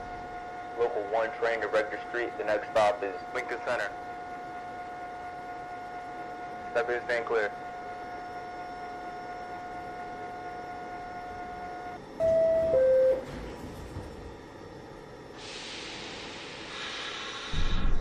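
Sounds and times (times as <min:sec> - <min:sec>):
train rumbling: 0:11.2 - 0:18.0
two-tone door chime: 0:12.2 - 0:13.6
hiss: 0:15.4 - 0:18.0.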